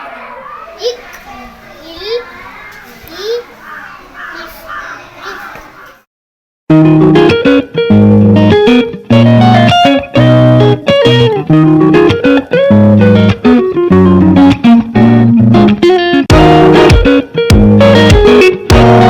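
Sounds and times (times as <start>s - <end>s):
guitar music: 6.7s - 19.0s.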